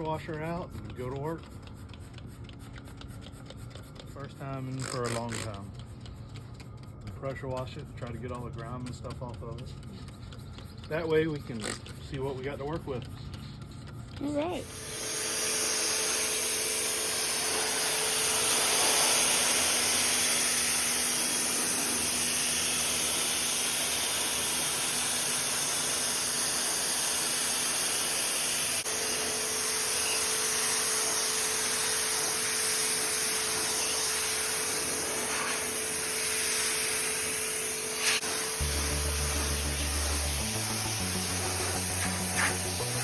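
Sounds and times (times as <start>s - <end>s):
pressure washer motor humming: 0.0s - 43.0s
water jet hissing: 14.6s - 43.0s.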